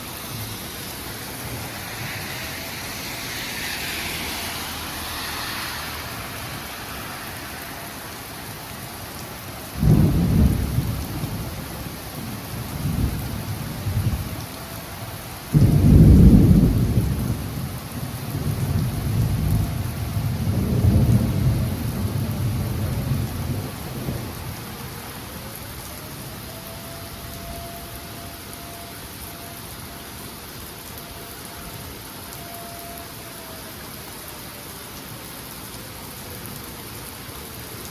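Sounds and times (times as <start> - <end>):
steady rain: 0.0 - 37.9
thunderclaps rumbling: 9.8 - 14.4, 15.5 - 24.9.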